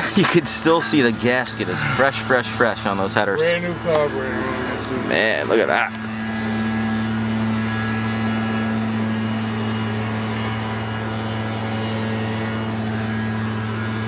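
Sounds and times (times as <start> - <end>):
engine idling: 0.0 - 14.0.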